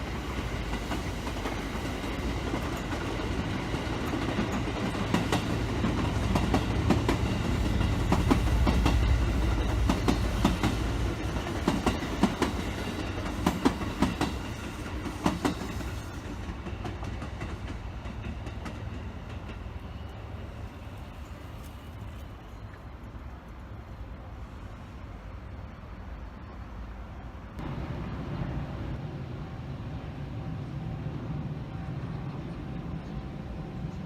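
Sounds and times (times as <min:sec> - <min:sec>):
train wheels clacking: 0:00.0 - 0:21.0
train rumble: 0:00.0 - 0:34.0.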